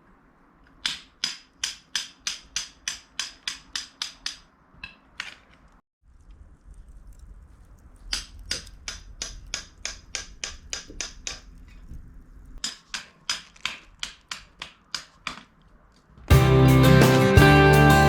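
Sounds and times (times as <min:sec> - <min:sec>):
guitar music: 0:16.3 - 0:18.0.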